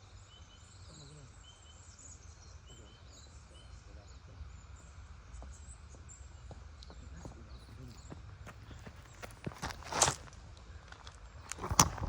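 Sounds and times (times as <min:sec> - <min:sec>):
faint high bird chirps: 0:00.0 - 0:08.2
low wind rumble: 0:10.4 - 0:12.0.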